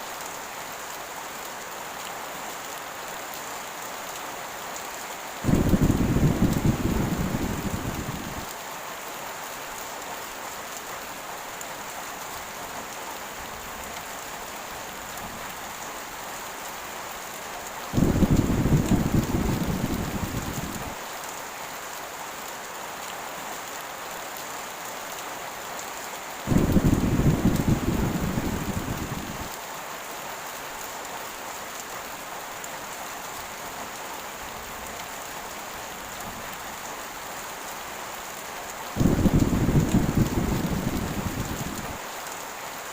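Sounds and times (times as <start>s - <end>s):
heavy rain falling: 0.0s - 42.9s
low thunder rumbles: 5.5s - 8.5s, 18.0s - 21.0s, 26.5s - 29.5s, 39.0s - 42.0s.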